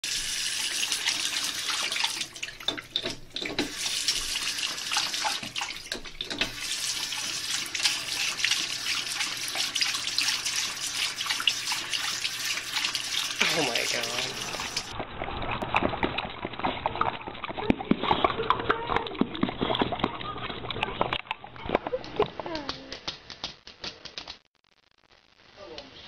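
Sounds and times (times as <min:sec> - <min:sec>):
running water splashing: 0:00.0 - 0:17.6.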